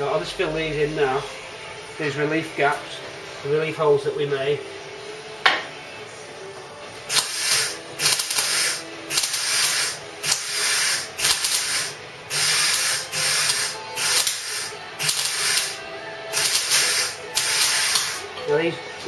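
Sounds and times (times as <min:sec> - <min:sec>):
welder crackling bursts: 0:07.1 - 0:18.3.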